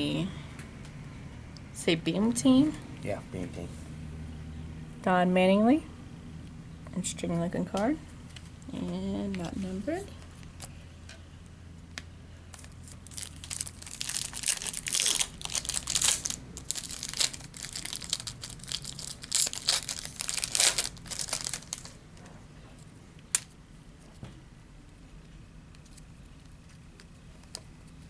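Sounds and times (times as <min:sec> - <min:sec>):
foil wrapper tearing and crinkling: 0:12.5 - 0:22.0.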